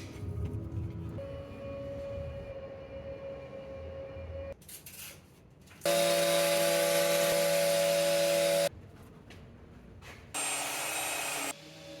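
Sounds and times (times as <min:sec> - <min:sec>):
power tool whining: 0:05.9 - 0:08.7, 0:10.4 - 0:11.6.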